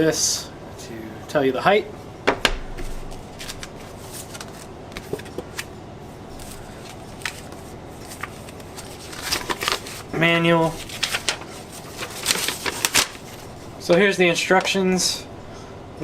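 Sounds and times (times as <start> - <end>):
paper rustling: 2.8 - 5.7, 6.3 - 14.7.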